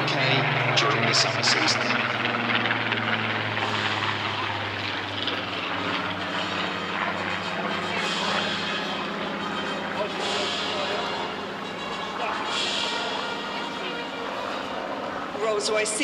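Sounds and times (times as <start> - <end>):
propeller plane engine drone: 0.0 - 16.0.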